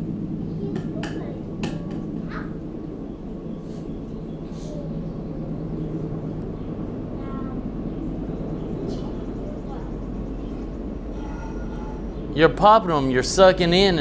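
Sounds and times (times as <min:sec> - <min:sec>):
low mechanical drone: 0:00.0 - 0:14.0
short hissing puffs: 0:03.6 - 0:04.9.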